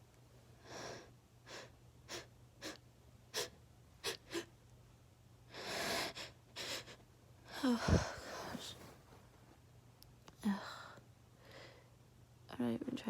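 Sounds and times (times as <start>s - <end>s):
woman gasping breaths: 5.5s - 8.8s, 10.5s - 11.9s.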